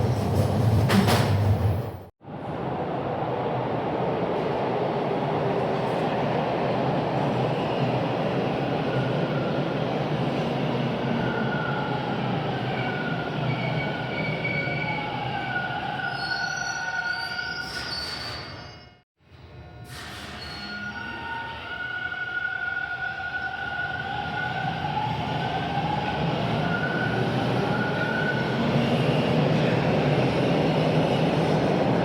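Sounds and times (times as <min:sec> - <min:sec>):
rail vehicle rumbling on track: 0:00.0 - 0:16.3
high-pitched wheel squeal: 0:12.7 - 0:19.0.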